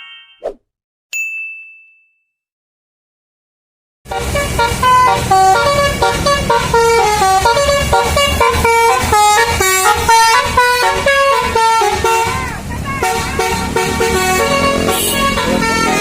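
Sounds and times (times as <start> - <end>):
musical bus horn melody: 4.1 - 16.0.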